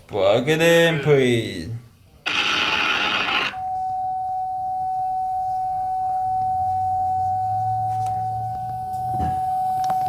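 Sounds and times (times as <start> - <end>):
faint low hum: 3.5 - 10.0.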